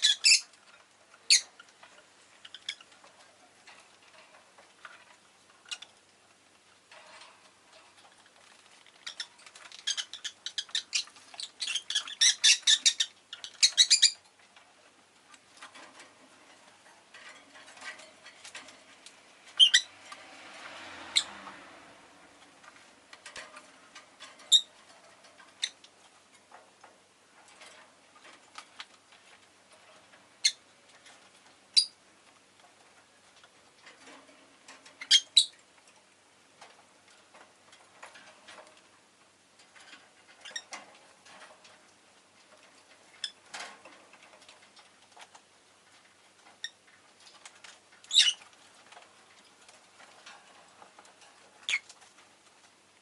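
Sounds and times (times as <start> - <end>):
lovebird chirping: 0.0 - 0.5, 1.3 - 1.5, 9.0 - 14.2, 19.6 - 19.9, 31.8 - 32.0, 35.0 - 35.5, 48.1 - 48.4.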